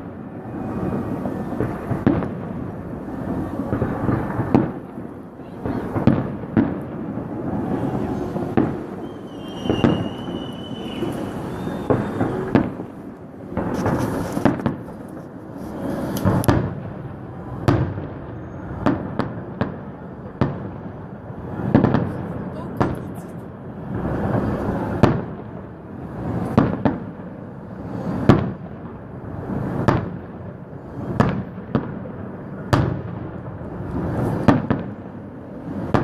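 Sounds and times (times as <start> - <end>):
fireworks booming: 0.0 - 36.0
whistling tone: 8.9 - 12.6.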